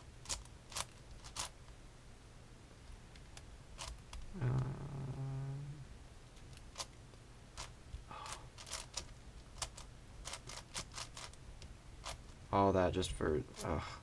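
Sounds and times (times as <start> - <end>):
puzzle cube clicks and rattles: 0.2 - 1.6, 3.2 - 4.3, 7.6 - 11.4, 12.0 - 12.3
person humming: 4.3 - 5.9.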